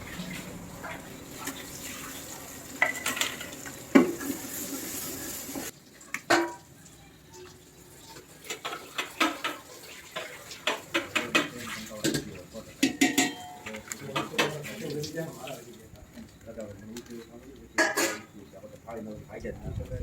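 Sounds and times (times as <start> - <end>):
steady hiss: 0.0 - 5.8
metal spoon clinking against pot: 8.5 - 14.6, 17.7 - 18.4.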